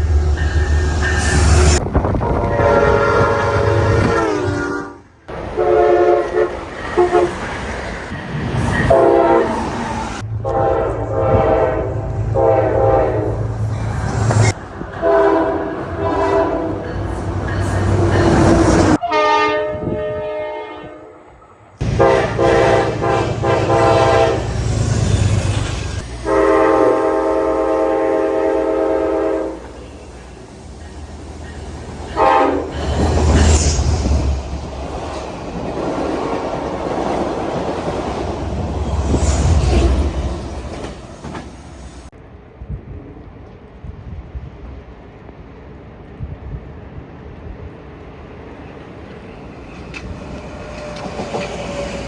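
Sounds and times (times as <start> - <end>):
rumble of passing trains: 0.0 - 52.0
train horn blasts: 0.4 - 7.4, 8.9 - 9.6, 10.4 - 13.7, 15.0 - 17.1, 18.8 - 24.6, 26.1 - 29.9, 32.1 - 33.7.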